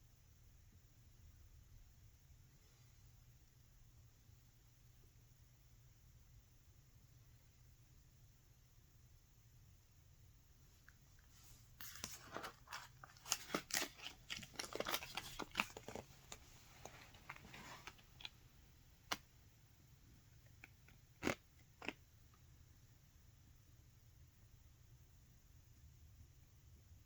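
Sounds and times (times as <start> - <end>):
paper crinkling: 11.3 - 18.4.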